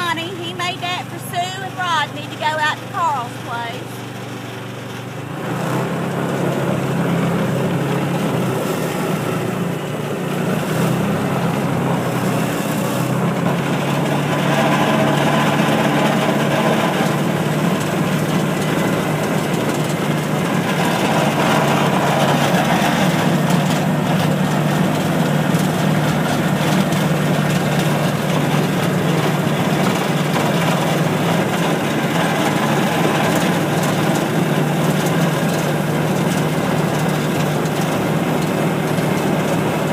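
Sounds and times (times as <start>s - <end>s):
farm vehicle engine running: 0.0s - 39.9s.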